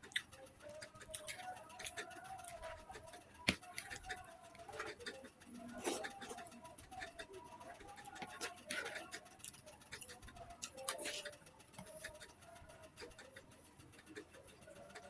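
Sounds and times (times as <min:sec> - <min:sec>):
wet chewing: 0:00.0 - 0:13.4
crackly eating bursts: 0:00.0 - 0:15.0.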